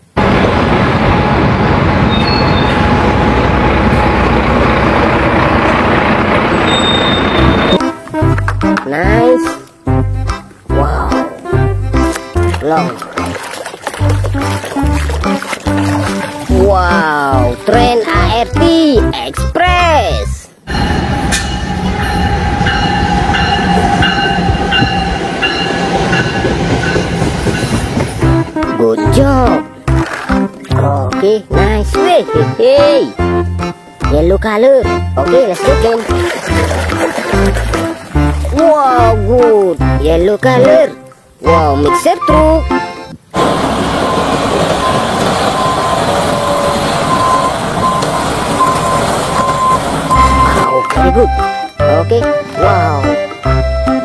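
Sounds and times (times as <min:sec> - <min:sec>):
train rumbling clatter: 0:00.0 - 0:07.8, 0:20.7 - 0:28.7, 0:43.4 - 0:50.7
cement mixer truck running: 0:00.0 - 0:08.6, 0:43.3 - 0:51.5
reversing alarm beeping: 0:01.2 - 0:04.5, 0:06.5 - 0:07.8, 0:43.8 - 0:51.6
short high ringing note: 0:02.1 - 0:03.3, 0:06.5 - 0:07.8, 0:20.7 - 0:27.2.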